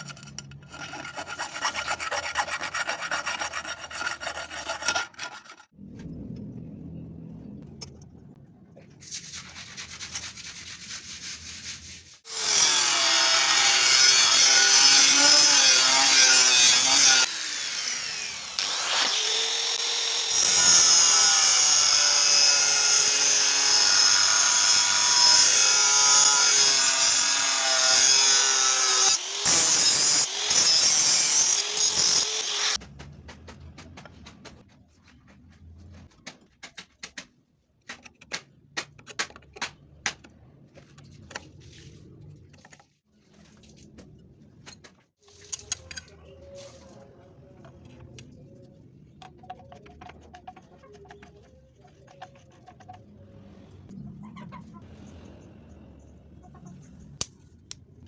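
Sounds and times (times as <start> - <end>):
circular saw cutting wood: 0.0 - 5.7, 12.2 - 32.8
rasping and rubbing on wood: 0.0 - 5.8, 9.2 - 12.6.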